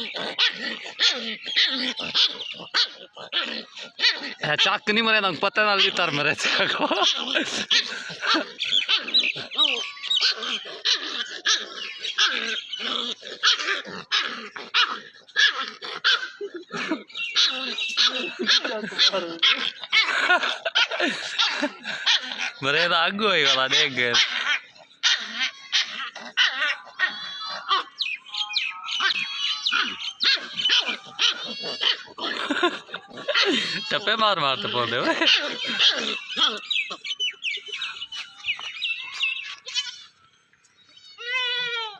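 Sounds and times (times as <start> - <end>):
puppy barking and yipping: 0.0 - 40.2.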